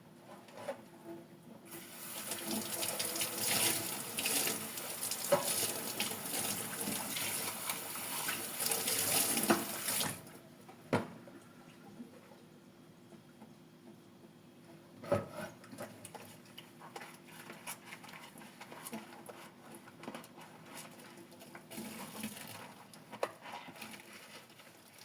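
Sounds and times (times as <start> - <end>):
tap running into sink: 2.2 - 7.8, 8.6 - 10.2.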